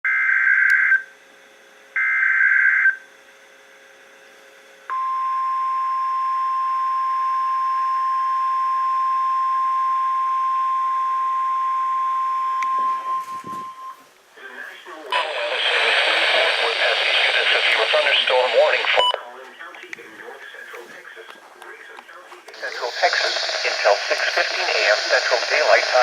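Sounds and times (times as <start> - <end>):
single-pitch alarm tone: 4.9 - 14.0.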